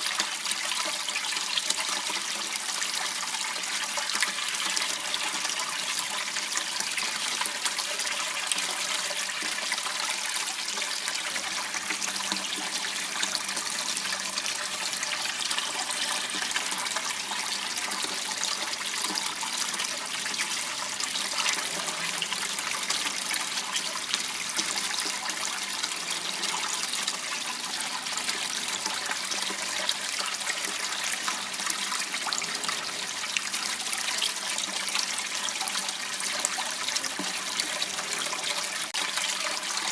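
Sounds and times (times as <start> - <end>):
water rushing and trickling: 0.0 - 39.9.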